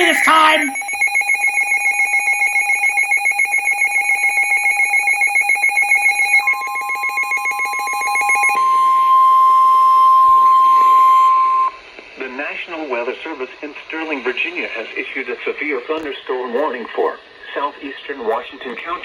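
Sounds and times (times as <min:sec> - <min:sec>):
fast-pulsing electronic alarm beep: 0:00.0 - 0:11.8
steady warning alarm tone: 0:00.0 - 0:11.8.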